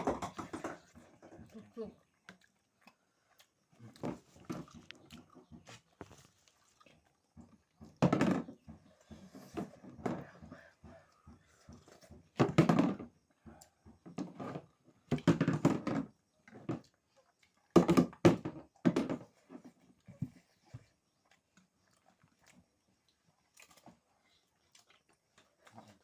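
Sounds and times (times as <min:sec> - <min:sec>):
chewing and mouth noises: 0:00.8 - 0:07.8, 0:16.4 - 0:17.8, 0:20.9 - 0:26.0.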